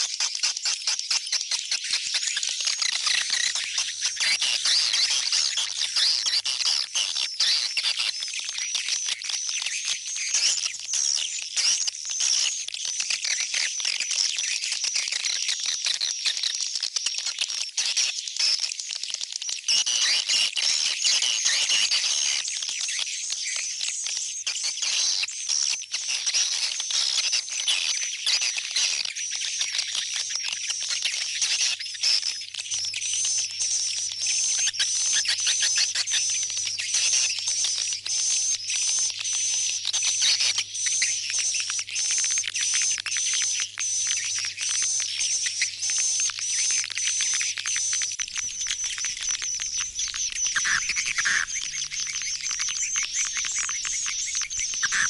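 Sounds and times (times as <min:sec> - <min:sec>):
swiftlets twittering: 0:42.8 - 0:55.0
sharp repeating chirp: 0:44.1 - 0:55.0.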